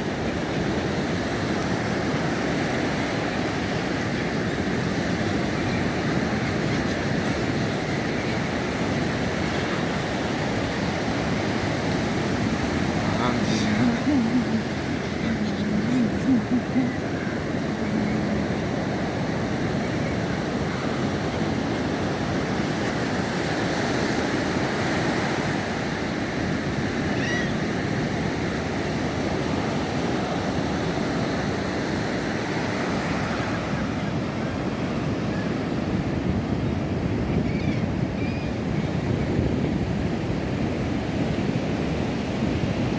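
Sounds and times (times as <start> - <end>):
ocean surf breaking: 0.0 - 37.2
faint seabird calls: 11.6 - 22.0, 27.0 - 28.0, 37.1 - 39.5.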